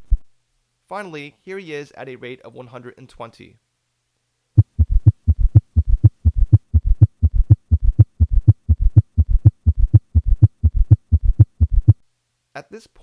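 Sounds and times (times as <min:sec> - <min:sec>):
heart beating with gallop: 0:04.6 - 0:12.0.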